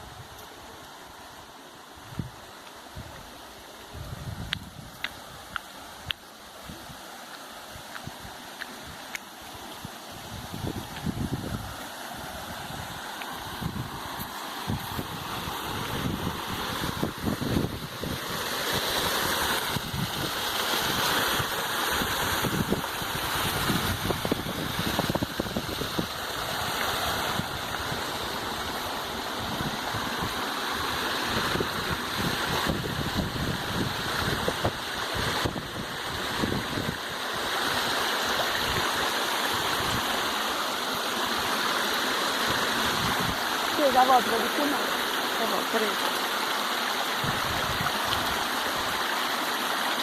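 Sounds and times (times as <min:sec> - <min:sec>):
waterfall rushing: 0:00.0 - 0:50.0
wind rumble on microphone: 0:02.0 - 0:07.0, 0:09.6 - 0:40.2, 0:42.4 - 0:44.1, 0:47.2 - 0:49.1.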